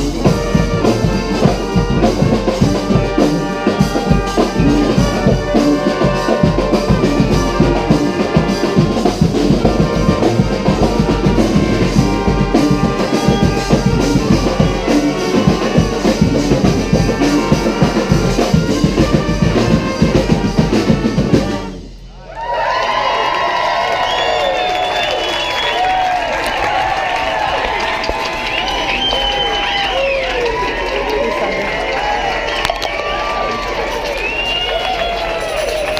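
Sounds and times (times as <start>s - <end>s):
brass street band playing: 0.0s - 22.2s, 24.8s - 35.9s.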